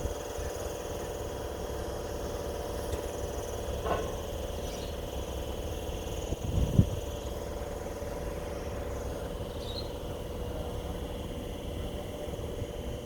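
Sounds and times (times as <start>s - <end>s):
steady droning hum: 0.0s - 13.0s
wind rumbling on microphone: 6.2s - 7.1s.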